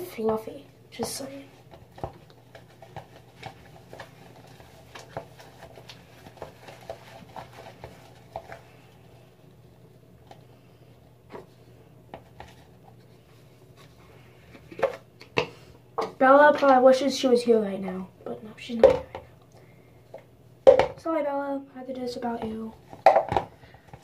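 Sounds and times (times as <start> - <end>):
soft slime squishes: 0.0 - 14.8.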